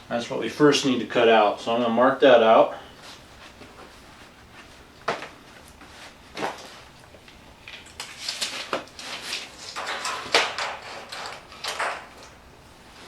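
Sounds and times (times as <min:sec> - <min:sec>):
scraping strokes on sheet metal: 0:08.1 - 0:11.9.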